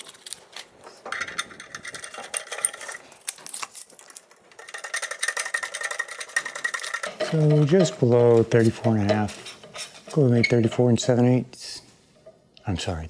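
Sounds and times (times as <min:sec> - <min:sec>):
metallic ticking and rattling: 0:01.1 - 0:03.1, 0:04.0 - 0:11.4.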